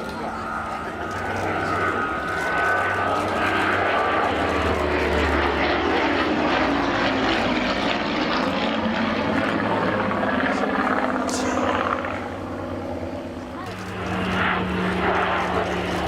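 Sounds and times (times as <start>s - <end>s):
aircraft engine flying past: 0.0s - 16.0s.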